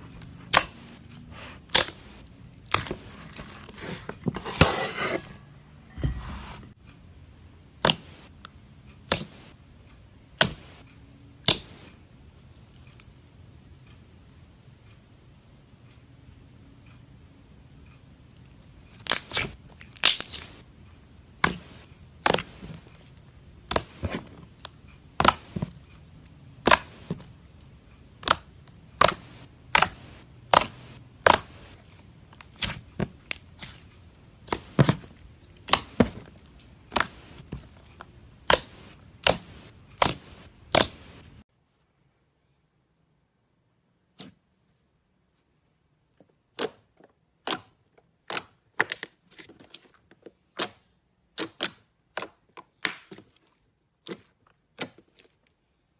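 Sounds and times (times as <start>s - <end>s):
slime clicking and popping: 38.4s - 41.0s, 50.6s - 53.2s.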